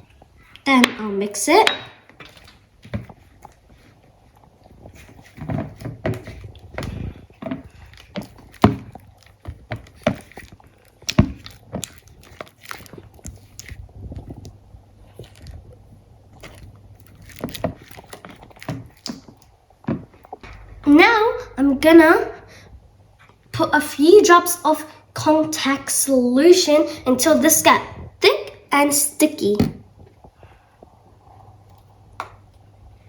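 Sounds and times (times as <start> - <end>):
sticky wet mixture sounds: 0.0 - 25.0.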